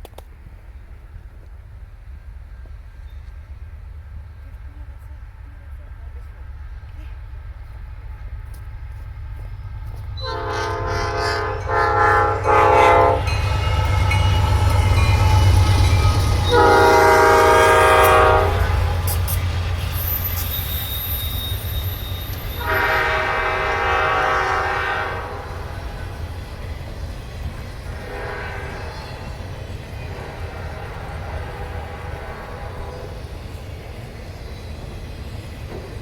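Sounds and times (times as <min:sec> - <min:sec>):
diesel locomotive engine rumble: 0:00.0 - 0:36.0
locomotive air horn blasts: 0:10.2 - 0:14.6, 0:15.2 - 0:19.4, 0:21.7 - 0:25.8, 0:27.9 - 0:29.0, 0:30.1 - 0:33.2.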